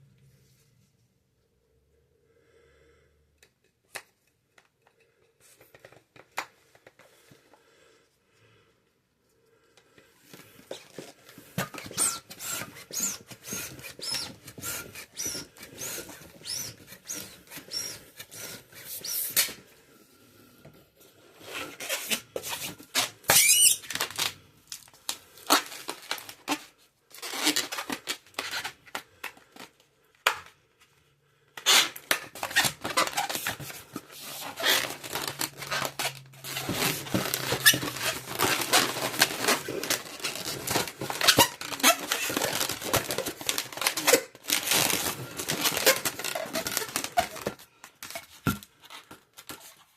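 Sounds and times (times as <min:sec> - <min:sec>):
balloons squeaking and creaking: 0:10.4 - 0:20.7, 0:21.4 - 0:29.7, 0:31.6 - 0:49.4.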